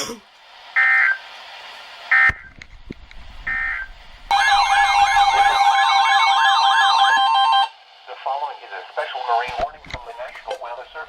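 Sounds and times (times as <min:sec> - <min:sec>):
buzzy digital data tones: 0:03.4 - 0:07.6
warbling electronic alert tone: 0:03.5 - 0:07.7.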